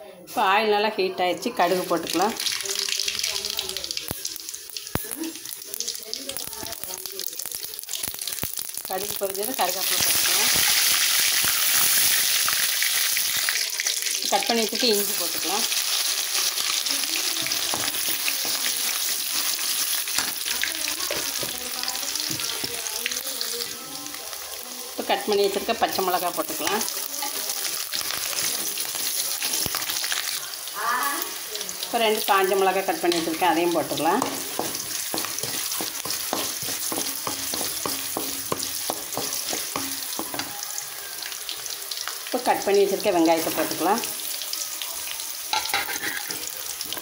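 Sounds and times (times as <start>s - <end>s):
spices sizzling in hot oil: 0.3s - 47.0s
spatula stirring against pan: 9.6s - 30.7s, 32.3s - 42.4s, 45.0s - 47.0s
spatula knocking and scraping pan: 17.4s - 19.5s, 21.0s - 22.6s, 33.1s - 40.6s.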